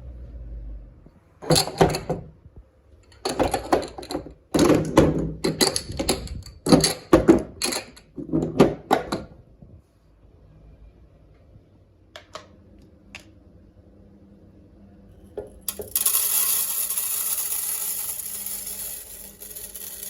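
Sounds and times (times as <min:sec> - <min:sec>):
jars knocking and clattering: 0:01.4 - 0:02.3, 0:03.1 - 0:09.3.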